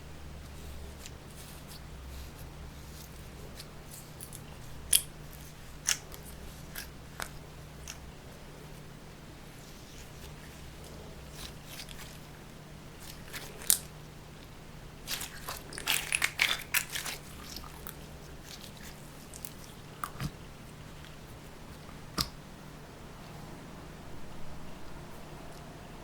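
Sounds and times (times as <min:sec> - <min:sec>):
low steady hum: 0:00.0 - 0:26.0
slime clicking and crackling: 0:13.0 - 0:13.9, 0:15.0 - 0:20.4.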